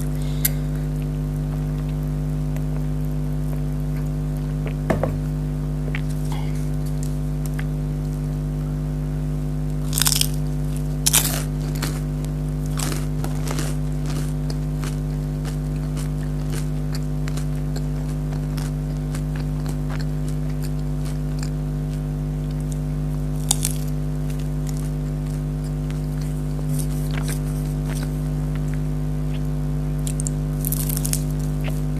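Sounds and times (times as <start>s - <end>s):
steady low hum: 0.0s - 31.9s
crunching fried food: 9.7s - 31.9s.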